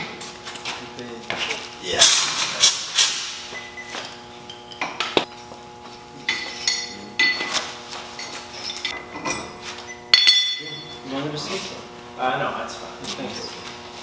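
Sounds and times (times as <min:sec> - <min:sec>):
metallic clinks and knocks: 0:10.2 - 0:10.9.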